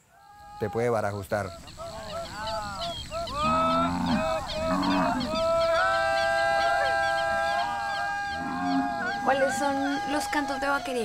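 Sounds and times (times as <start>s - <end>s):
flock of birds calling: 0.1s - 11.0s
cattle mooing: 3.3s - 10.2s.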